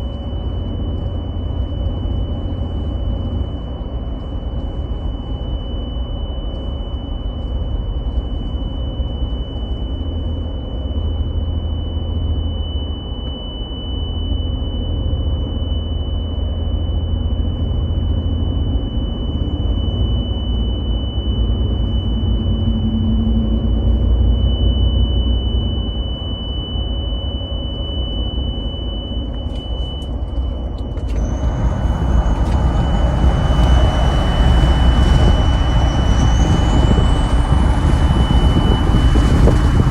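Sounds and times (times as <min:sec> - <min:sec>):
truck rumble on highway: 0:29.4 - 0:39.9
rush of noise: 0:30.7 - 0:39.9.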